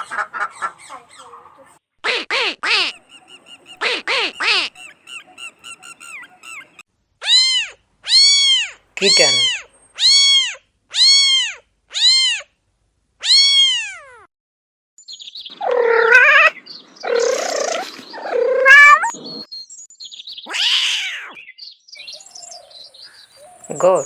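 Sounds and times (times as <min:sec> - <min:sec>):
kitten meowing: 0:07.2 - 0:12.4, 0:13.2 - 0:14.3, 0:15.6 - 0:16.6, 0:18.2 - 0:19.1, 0:20.5 - 0:21.4.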